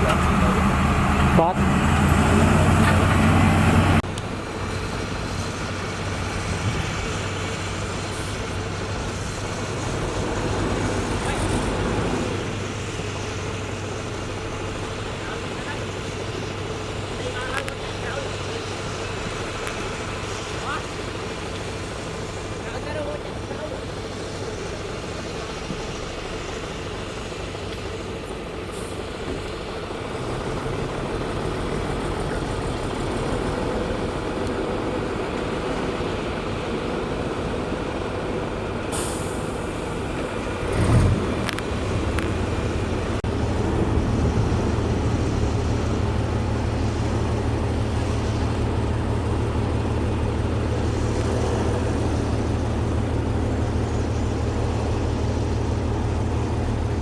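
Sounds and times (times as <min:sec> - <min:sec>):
heavy machinery diesel engine: 0:00.0 - 0:57.0
brief hiss: 0:38.9 - 0:40.8.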